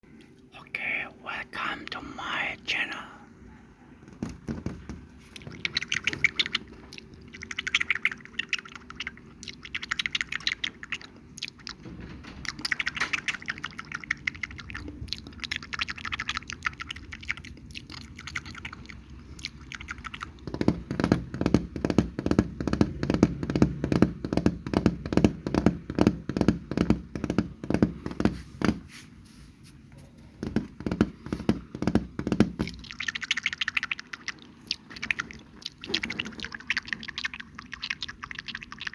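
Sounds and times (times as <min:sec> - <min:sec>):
wet mouth clicks and smacks: 0:05.3 - 0:11.8, 0:12.5 - 0:20.6, 0:32.6 - 0:38.9.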